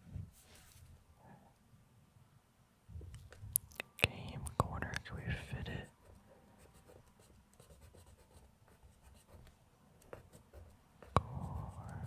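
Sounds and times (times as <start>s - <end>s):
pencil scratching on paper: 5.6s - 9.4s, 10.1s - 12.0s.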